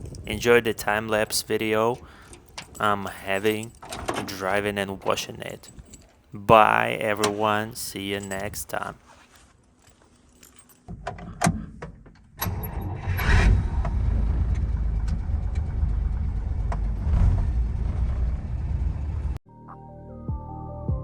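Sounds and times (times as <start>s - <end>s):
keys jangling: 0.0s - 11.5s
car engine starting and running: 12.4s - 19.4s.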